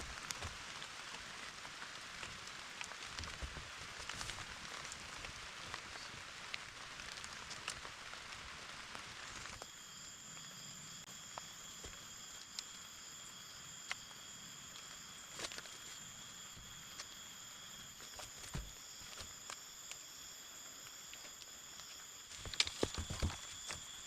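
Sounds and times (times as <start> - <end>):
high-pitched insect chorus: 0.0 - 24.0
rain hiss: 0.0 - 24.0.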